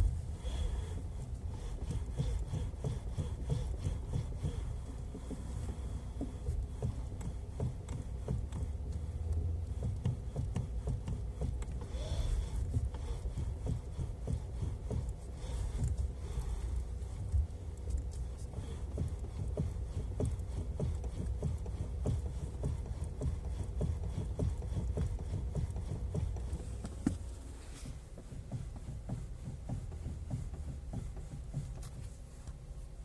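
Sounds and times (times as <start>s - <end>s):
low rumble: 0.0s - 4.9s.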